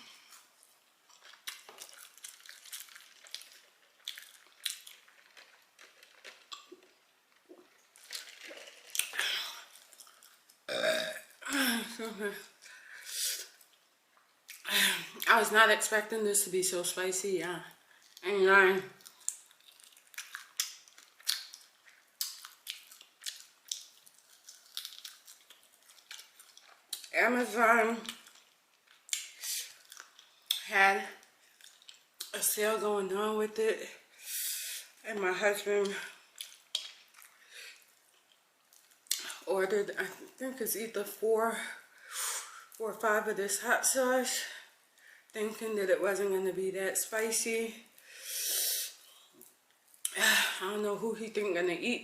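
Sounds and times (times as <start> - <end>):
chewing crunchy food: 0.0 - 10.8, 17.9 - 18.2, 18.9 - 27.2, 28.0 - 30.6, 31.2 - 32.4, 36.1 - 39.4.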